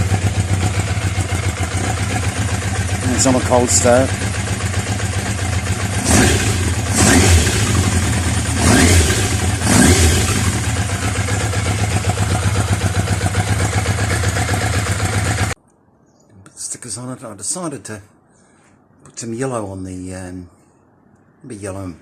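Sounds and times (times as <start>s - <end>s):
motorcycle engine revving and idling: 0.0s - 15.6s.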